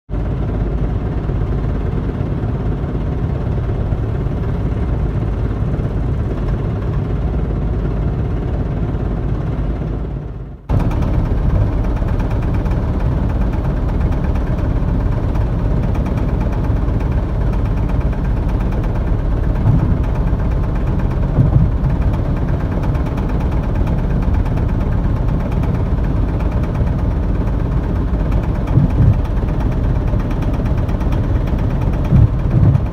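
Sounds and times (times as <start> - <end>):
car road rumble: 10.7 - 26.7, 27.6 - 32.9
fast even rattle: 10.7 - 32.9
loud thumps: 19.2 - 22.4, 28.5 - 29.6, 32.0 - 32.9.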